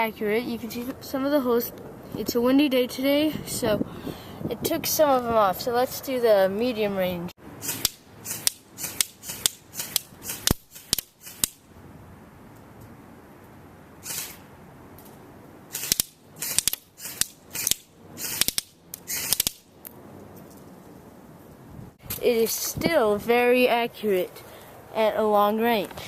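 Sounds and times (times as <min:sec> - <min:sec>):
airsoft rifle shots snapping: 0:07.6 - 0:11.6, 0:14.0 - 0:14.4, 0:15.7 - 0:19.7.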